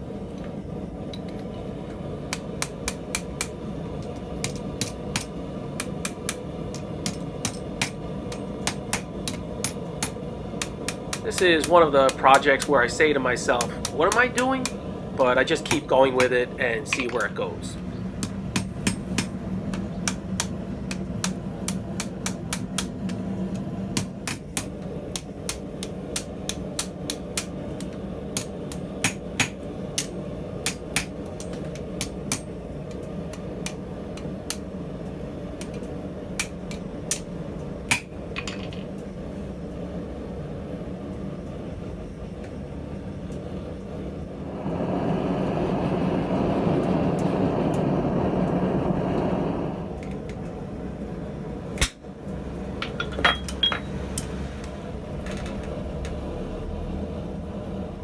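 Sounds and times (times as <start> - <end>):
steady low hum: 0.0 - 58.0
hammer striking steel on anvil: 2.3 - 12.7, 15.6 - 17.5, 18.2 - 23.2, 24.0 - 32.6, 37.9 - 38.9, 52.8 - 54.3
steady rushing noise: 43.7 - 51.5.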